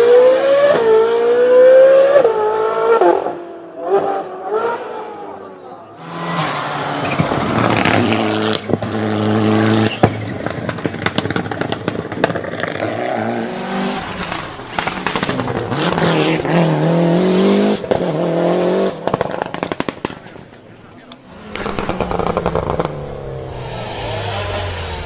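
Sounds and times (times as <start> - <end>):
car engine revving hard: 6.0 - 10.1, 12.5 - 20.2, 21.3 - 25.0
exhaust pops and bangs: 9.8 - 13.0, 14.0 - 16.5, 19.0 - 20.6, 21.4 - 23.1.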